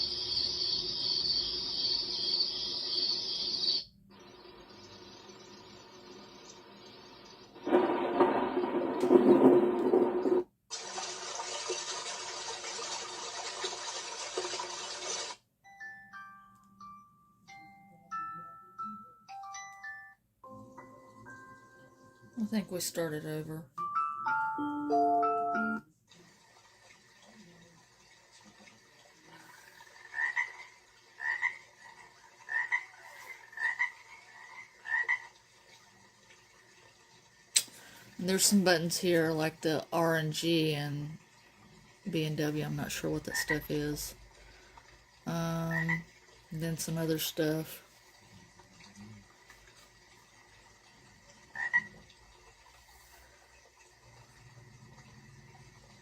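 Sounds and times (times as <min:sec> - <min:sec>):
rushing noise from speaker: 0:07.6 - 0:10.4
frog croaking through small speaker: 0:30.0 - 0:31.7, 0:32.5 - 0:35.4, 0:43.2 - 0:43.8, 0:45.3 - 0:46.1, 0:51.5 - 0:52.1.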